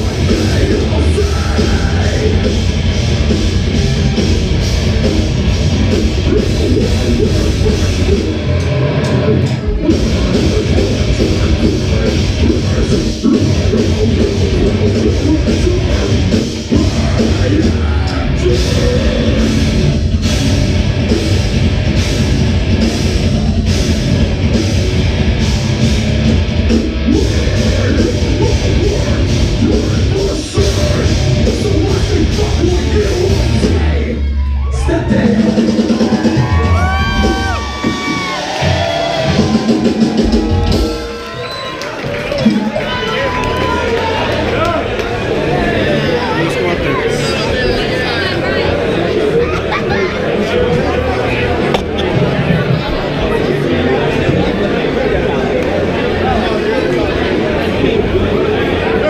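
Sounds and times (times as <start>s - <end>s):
live rock band playing loud: 0.0s - 41.8s.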